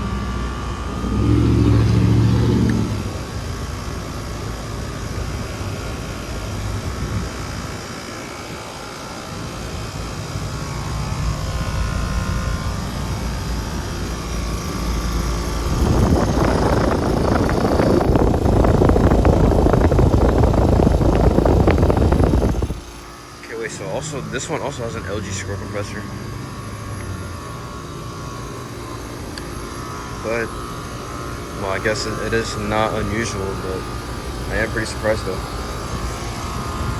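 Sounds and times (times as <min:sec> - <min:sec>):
choppy rush of air: 0:00.0 - 0:04.7, 0:14.4 - 0:25.2
condensing unit humming: 0:00.0 - 0:36.9.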